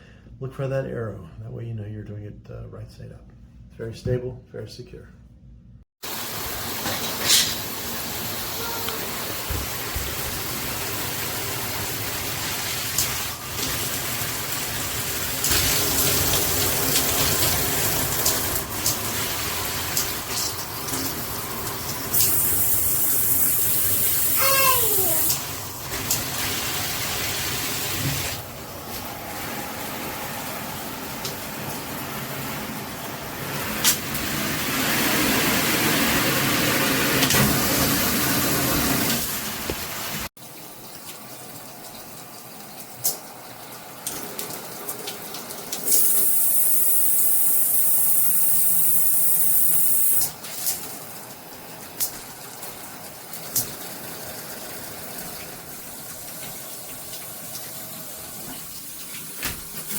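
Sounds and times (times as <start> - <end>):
shower head spraying water: 6.4 - 29.1, 45.8 - 50.8.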